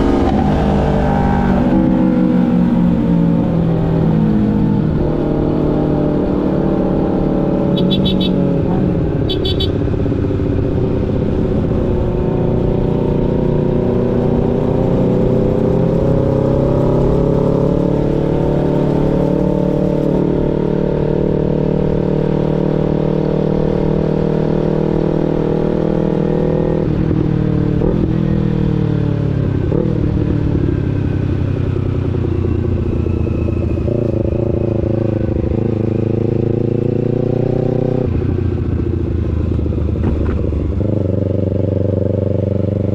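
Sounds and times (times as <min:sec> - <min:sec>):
motorcycle engine at speed: 0:00.0 - 0:42.9
wind rumble on microphone: 0:38.0 - 0:42.9.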